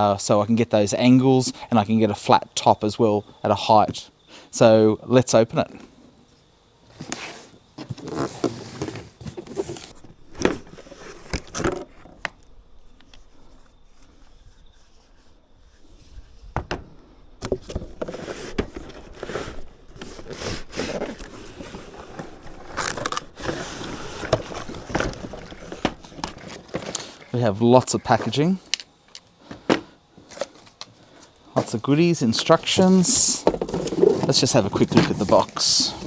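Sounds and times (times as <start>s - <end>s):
packaging rustling and scraping: 6.9s - 11.9s, 17.8s - 36.0s
cardboard box being opened: 7.0s - 10.7s, 20.9s - 27.3s, 29.6s - 36.0s.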